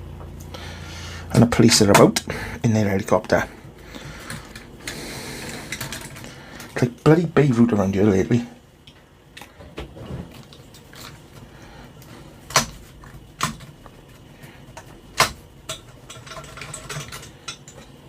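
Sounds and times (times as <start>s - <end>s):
faint fan noise: 0.0s - 18.0s
metal tools clicking and knocking: 14.7s - 18.0s.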